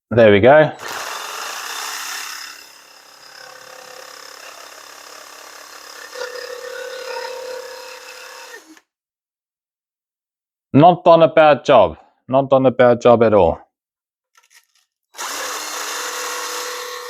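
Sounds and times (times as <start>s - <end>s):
impact driver whirring: 0.8s - 8.9s, 15.2s - 17.0s.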